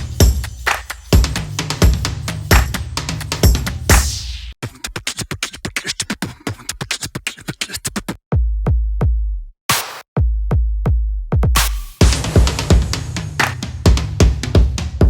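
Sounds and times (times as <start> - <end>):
electronic music with drum-machine beat: 0.0 - 5.0, 11.4 - 15.0
heavy booming bass kicks: 12.0 - 15.0.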